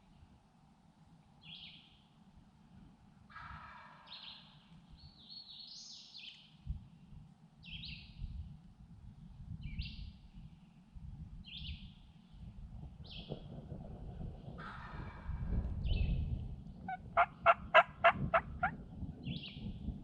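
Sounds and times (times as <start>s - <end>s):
songbird singing: 1.4s - 2.1s, 3.4s - 8.6s, 9.6s - 13.4s, 15.7s - 20.0s
low rumbling noise: 12.3s - 20.0s.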